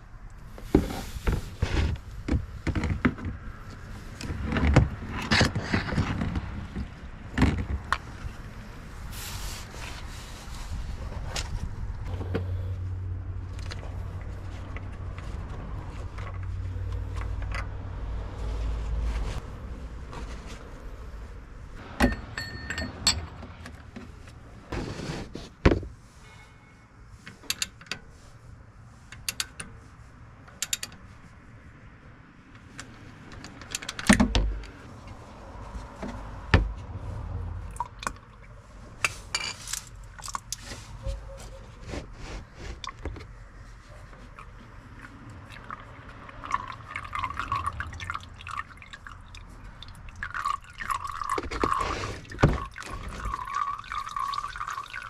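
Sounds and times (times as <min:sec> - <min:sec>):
oil trickling and dripping: 0:37.2 - 0:40.9, 0:42.8 - 0:55.0.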